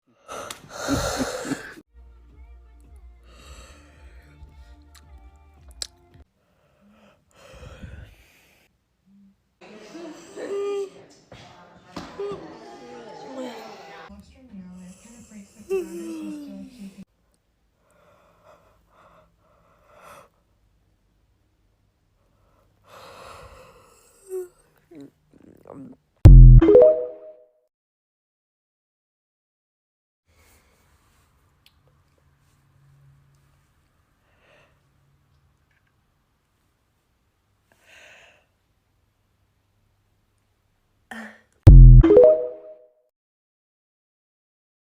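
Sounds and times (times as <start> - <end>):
person yawning: 0.3 - 1.8
person breathing faintly: 3.2 - 4.9, 6.4 - 9.3.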